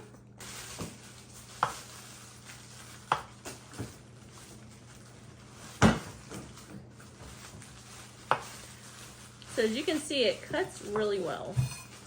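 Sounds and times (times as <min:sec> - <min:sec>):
knife cutting through potato: 0:08.2 - 0:08.7.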